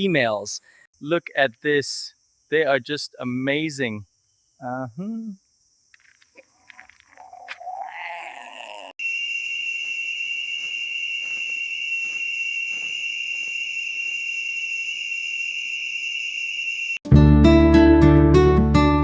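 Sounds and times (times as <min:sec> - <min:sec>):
high-pitched whistling drone: 0:09.1 - 0:17.0.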